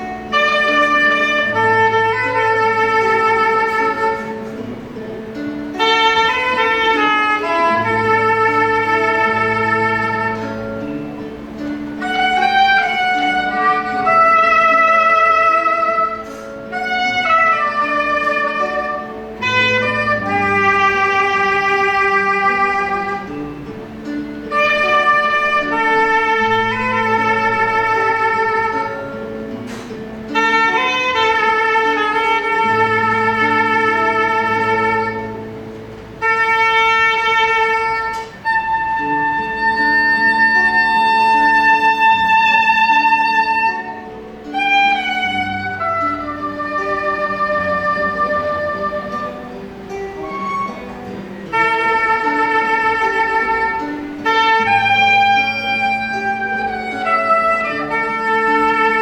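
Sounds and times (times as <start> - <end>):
bass line accompaniment: 0.0 - 59.0
soprano saxophone ballad melody: 0.0 - 59.0.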